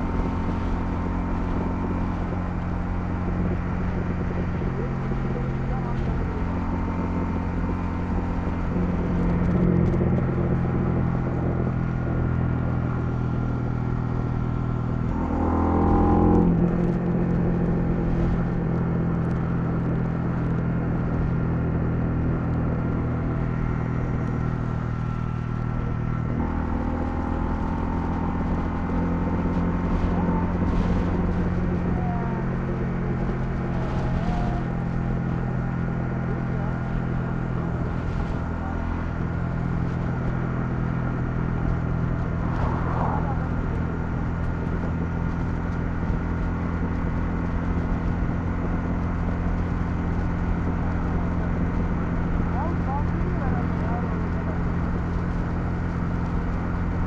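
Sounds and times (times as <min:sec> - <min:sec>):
motorcycle engine running: 0:00.0 - 0:57.0.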